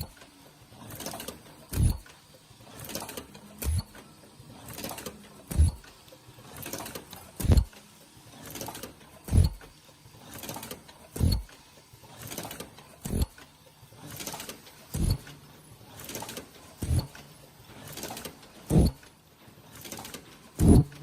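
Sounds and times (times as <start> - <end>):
welding machine mechanical swell: 1.0 - 3.9, 4.6 - 15.3, 16.0 - 19.0, 20.0 - 21.0
heavy low machine thump: 20.6 - 20.9.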